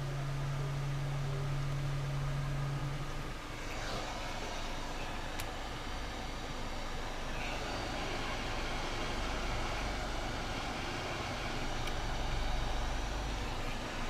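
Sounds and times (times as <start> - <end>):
low hum: 0.0 - 14.0.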